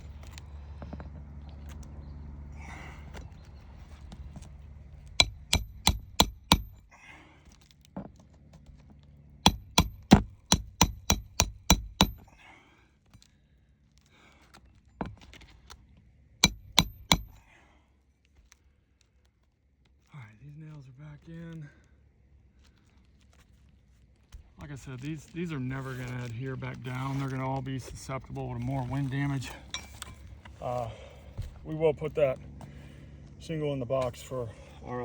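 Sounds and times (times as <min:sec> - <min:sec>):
hammer blows on a shingle roof: 0:04.4 - 0:07.0, 0:09.4 - 0:12.4, 0:16.4 - 0:17.5.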